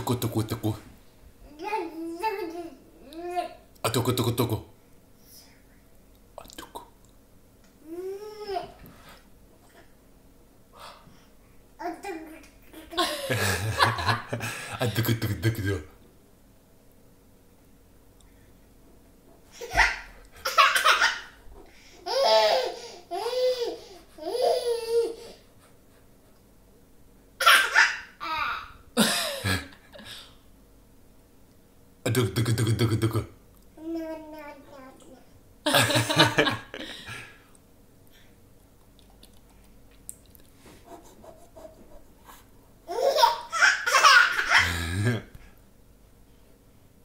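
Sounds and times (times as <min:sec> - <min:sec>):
faint mouth clicks: 0:38.8 - 0:40.6.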